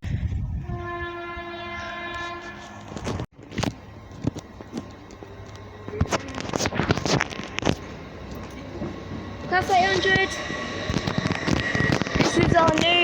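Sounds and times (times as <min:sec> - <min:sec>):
train horn: 0:00.6 - 0:03.1.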